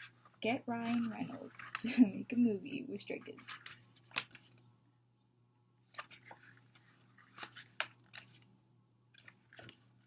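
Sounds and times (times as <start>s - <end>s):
album pages rustling and clicking: 0.0s - 1.9s, 3.3s - 4.7s, 5.9s - 8.5s, 9.1s - 10.0s.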